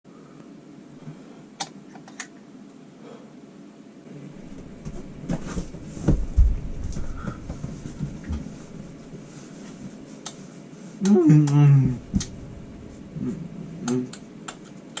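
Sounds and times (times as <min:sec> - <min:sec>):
heavy low bumps: 0:04.4 - 0:09.1, 0:11.8 - 0:14.3
rustling and knocks: 0:04.4 - 0:10.0.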